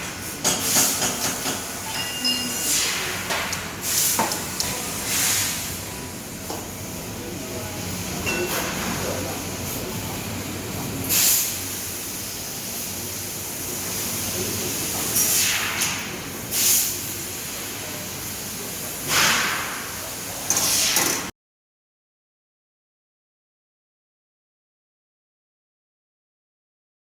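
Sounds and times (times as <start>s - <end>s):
short hissing bursts: 2.6s - 5.9s, 11.1s - 15.8s, 16.4s - 21.2s.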